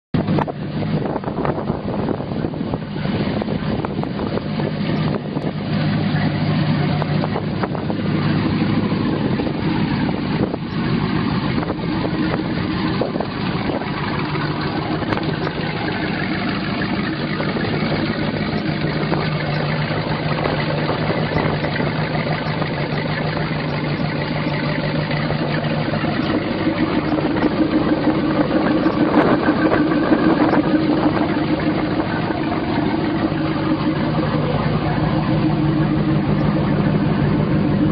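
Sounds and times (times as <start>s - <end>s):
boat engine idling: 0.1s - 37.9s.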